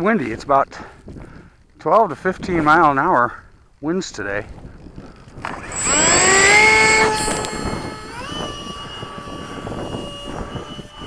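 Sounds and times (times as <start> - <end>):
electric ducted fan whining: 5.4 - 11.0.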